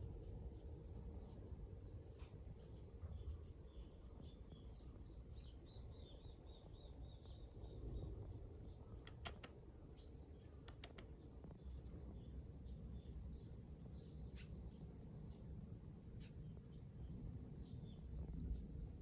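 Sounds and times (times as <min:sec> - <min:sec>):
low background rumble: 0:00.0 - 0:19.0
faint bird chirps: 0:00.4 - 0:19.0
sharp clicks: 0:09.0 - 0:09.6, 0:10.5 - 0:11.2.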